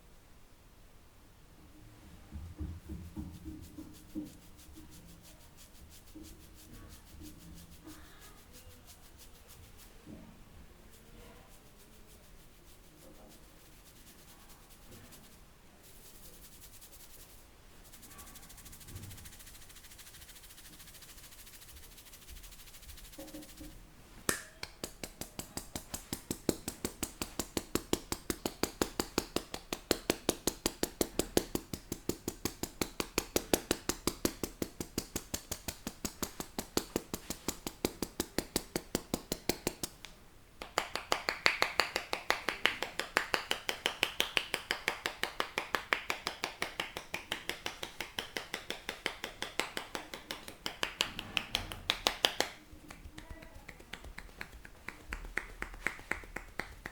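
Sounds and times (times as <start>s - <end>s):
rapid hand slapping: 17.9s - 56.9s.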